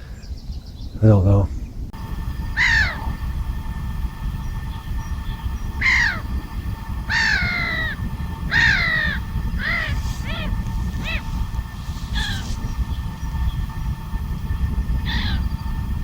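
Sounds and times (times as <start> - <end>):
steady low rumble: 0.2 - 16.0
crow cawing: 2.5 - 3.3, 5.8 - 6.4, 7.0 - 12.6, 15.0 - 15.5.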